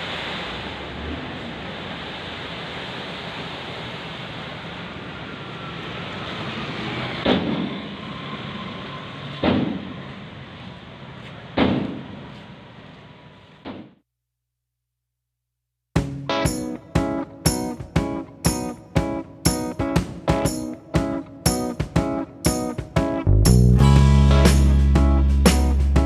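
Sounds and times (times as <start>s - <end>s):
road traffic noise: 0.0s - 13.6s.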